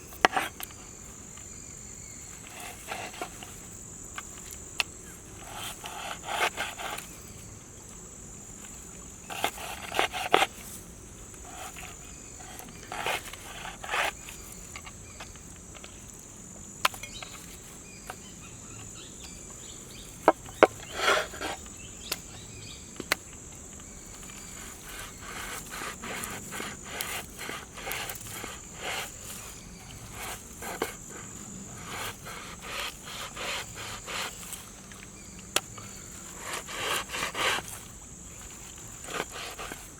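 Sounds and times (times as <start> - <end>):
rustling and scraping: 0.0 - 22.4, 23.0 - 39.9
insects trilling: 0.0 - 39.9.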